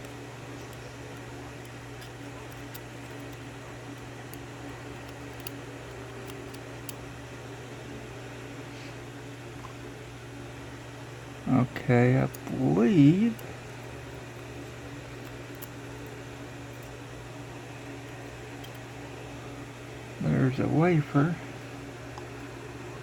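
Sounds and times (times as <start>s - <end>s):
steady low hum: 0.0s - 23.0s.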